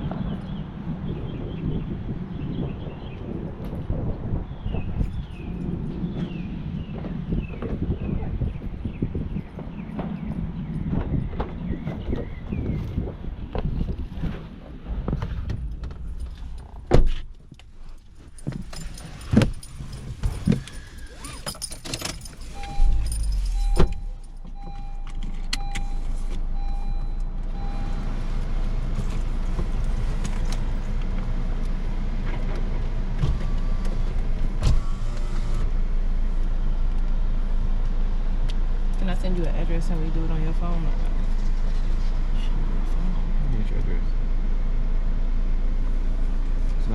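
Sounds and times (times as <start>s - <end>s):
car engine starting and running: 0.0s - 46.9s
car door knocks and clunks: 15.0s - 17.4s
keys jangling: 17.5s - 24.5s
car warning chime beeping: 22.5s - 28.4s.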